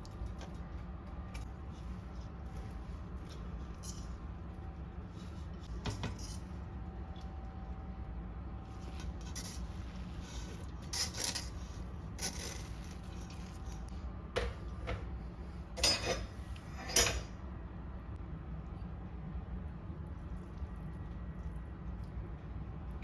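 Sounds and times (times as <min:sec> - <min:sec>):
steady low hum: 0:00.0 - 0:23.0
dishes and utensils clinking: 0:15.8 - 0:17.4.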